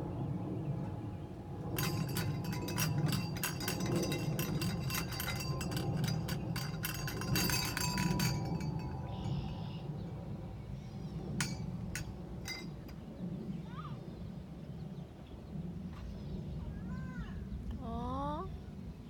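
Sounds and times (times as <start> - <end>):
wind rumbling on microphone: 0.0 - 19.0
rapid light ringing clinks: 1.6 - 13.1.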